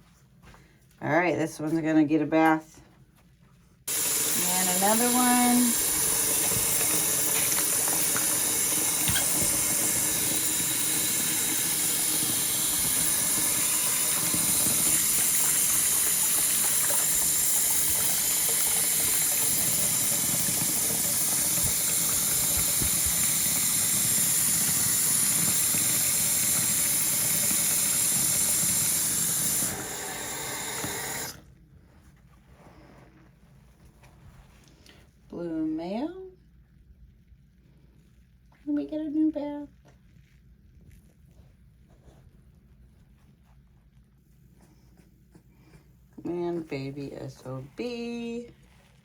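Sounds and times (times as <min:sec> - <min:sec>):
water running from a tap: 0:03.9 - 0:31.4.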